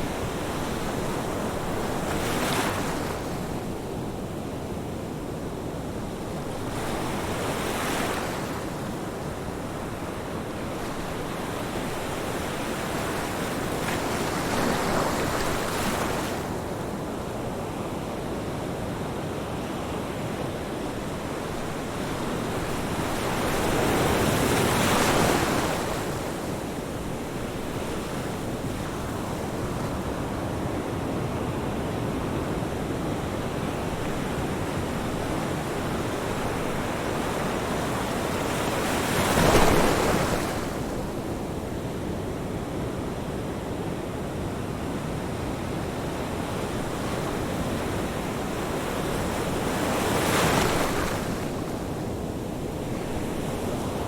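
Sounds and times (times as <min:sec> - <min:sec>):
ocean waves breaking: 0:32.9 - 0:41.4, 0:46.2 - 0:54.0.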